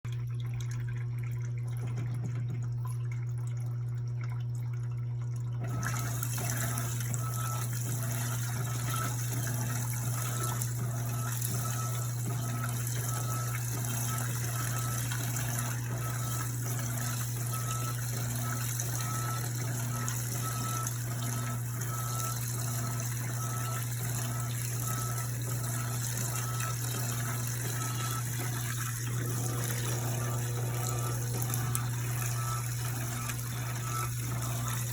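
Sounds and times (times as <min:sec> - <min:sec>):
water rushing in washing machine: 0:00.1 - 0:34.9
steady low hum: 0:21.6 - 0:34.9.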